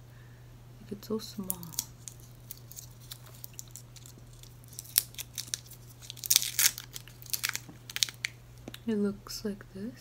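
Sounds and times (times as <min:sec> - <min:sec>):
plastic wrapper crinkling and tearing: 0:01.4 - 0:08.8.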